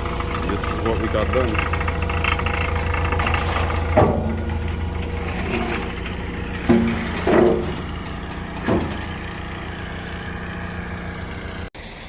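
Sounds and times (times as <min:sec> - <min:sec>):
diesel truck engine idling: 0:00.0 - 0:12.0
short knocks: 0:00.6 - 0:09.7.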